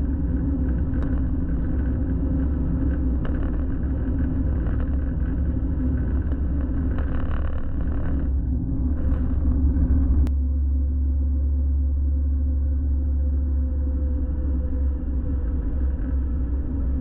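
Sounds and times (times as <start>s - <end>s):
road noise: 0.0s - 10.3s
truck engine rumble: 0.0s - 17.0s.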